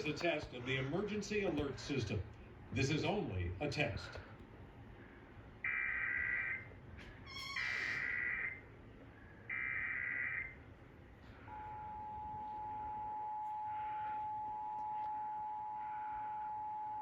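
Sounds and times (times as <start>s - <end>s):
emergency alert attention tone: 11.5s - 17.0s.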